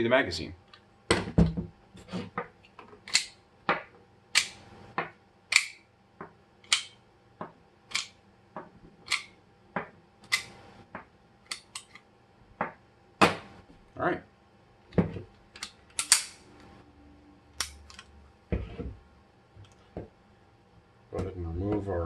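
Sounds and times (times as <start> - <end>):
metallic clicks of cartridges: 6.6 - 7.0, 15.6 - 16.4.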